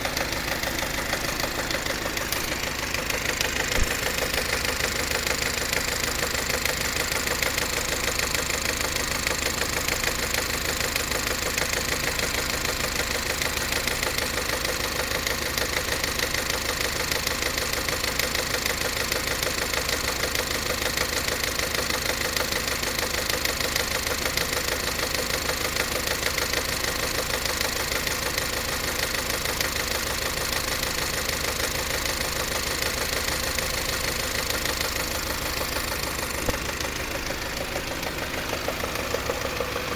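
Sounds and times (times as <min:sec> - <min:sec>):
car engine idling: 0:00.0 - 0:39.9
rapid knocking in engine: 0:00.0 - 0:39.9
fuel pump clattering: 0:32.1 - 0:39.9.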